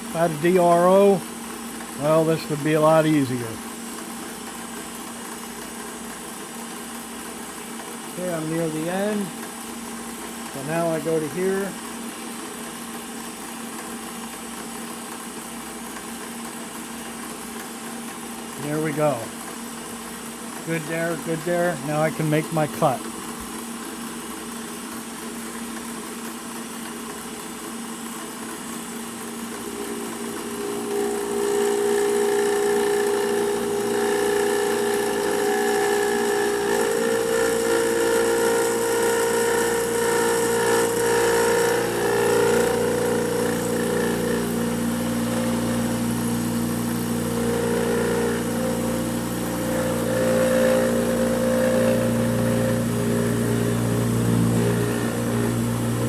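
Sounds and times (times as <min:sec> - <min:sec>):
milling machine cutting metal: 0:00.0 - 0:04.0, 0:08.0 - 0:09.6, 0:10.2 - 0:12.0, 0:17.8 - 0:23.6, 0:27.9 - 0:56.0.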